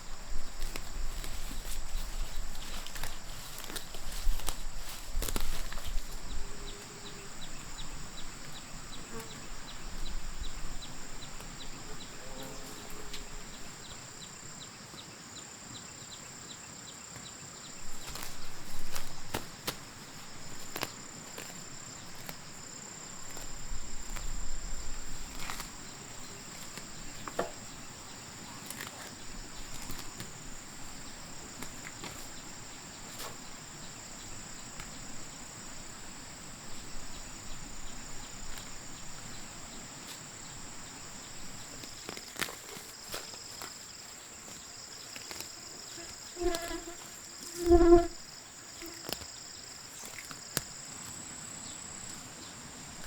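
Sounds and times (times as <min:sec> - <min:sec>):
insects chirring: 0:00.0 - 0:53.0
knocks and rustles: 0:26.5 - 0:27.8.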